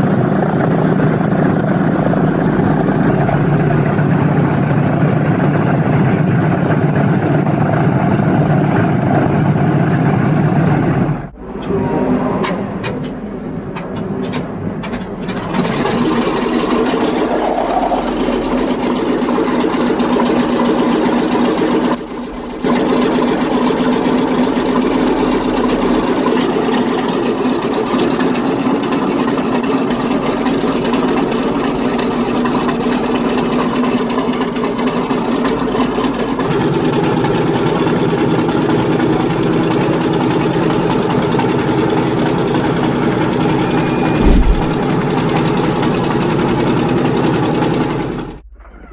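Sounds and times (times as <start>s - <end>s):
aircraft engine running: 0.0s - 12.2s.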